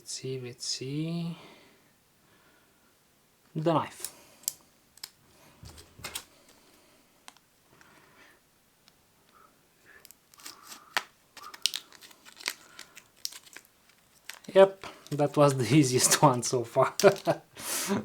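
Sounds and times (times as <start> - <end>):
plastic packaging crinkling and tearing: 10.1 - 17.4.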